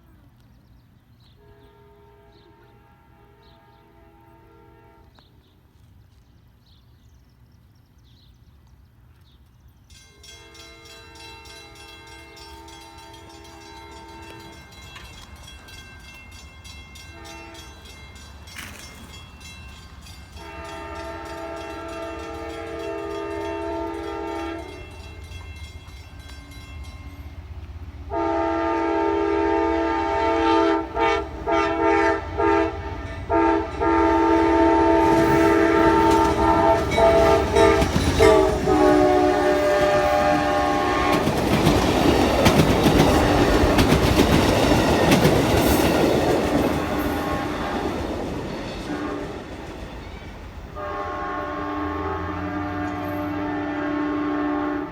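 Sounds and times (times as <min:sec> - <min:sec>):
locomotive air horn blasts: 0:01.4 - 0:05.3, 0:12.0 - 0:14.6, 0:17.1 - 0:17.8, 0:20.4 - 0:24.9, 0:28.1 - 0:41.6, 0:46.8 - 0:48.0, 0:48.8 - 0:49.5, 0:50.8 - 0:54.9
train rumble and rail clatter: 0:08.0 - 0:54.9.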